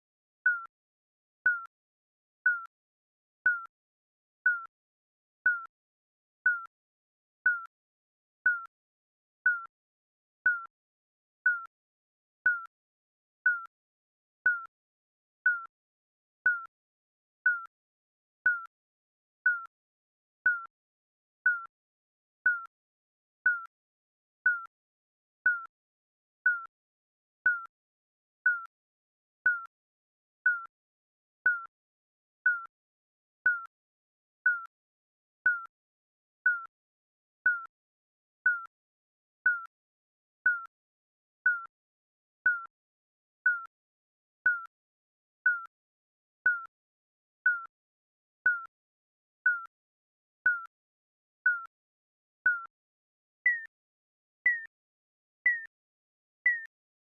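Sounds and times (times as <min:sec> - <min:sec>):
high electronic timer beeps: 0:00.5 - 0:00.7, 0:53.4 - 0:53.7, 0:54.4 - 0:54.7, 0:55.4 - 0:55.7, 0:56.4 - 0:56.7.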